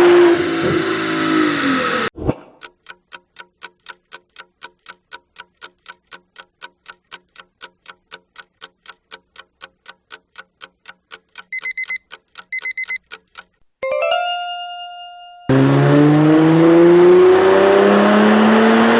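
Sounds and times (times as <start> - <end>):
clock ticking: 2.6 - 13.6
rapid high beeping: 11.5 - 13.0.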